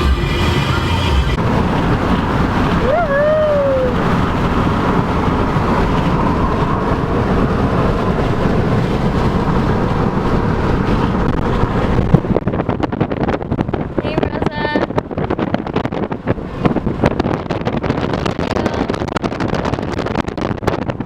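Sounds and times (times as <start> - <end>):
moving vehicle rushing noise: 0.0 - 21.0
wind buffeting microphone: 1.3 - 21.0.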